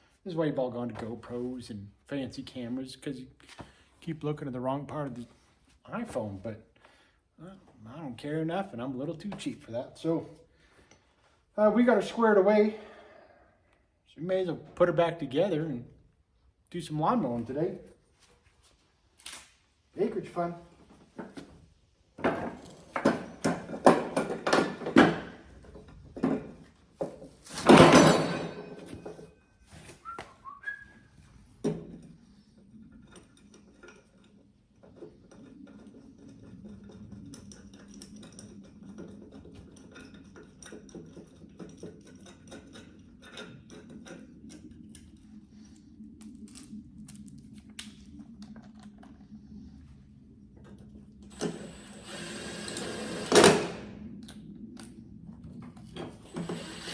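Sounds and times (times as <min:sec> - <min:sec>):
steady low hum: 0:00.0 - 0:56.9
metal tools clanking: 0:27.4 - 0:29.3.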